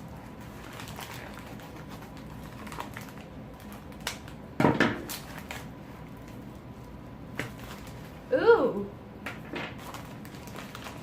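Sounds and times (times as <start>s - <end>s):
crinkling rustle: 0.0s - 4.4s, 5.0s - 8.2s, 9.7s - 11.0s
package rustling and clicking: 0.3s - 6.4s, 9.6s - 11.0s.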